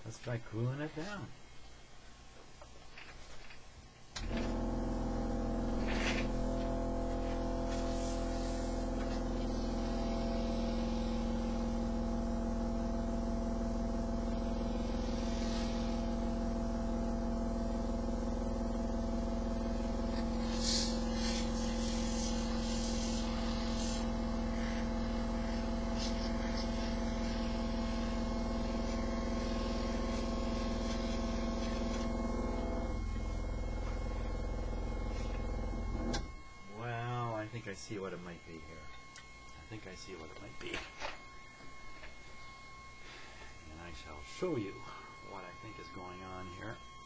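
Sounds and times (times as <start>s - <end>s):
radio buzzing tone: 4.2s - 47.0s
short hissing sprays: 7.6s - 8.8s, 15.0s - 15.9s, 20.2s - 24.9s.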